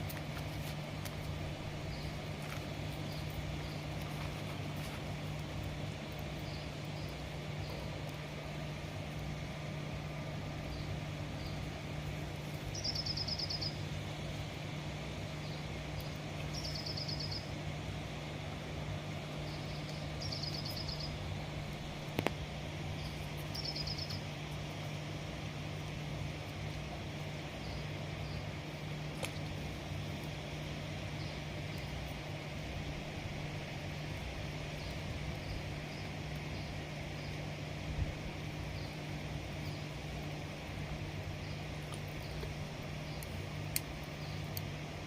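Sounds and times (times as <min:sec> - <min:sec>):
outdoor background noise: 0:00.0 - 0:45.0
steady low hum: 0:00.0 - 0:45.0
faint bird chirps: 0:12.7 - 0:13.8, 0:15.4 - 0:17.5, 0:19.4 - 0:21.2, 0:23.0 - 0:24.3.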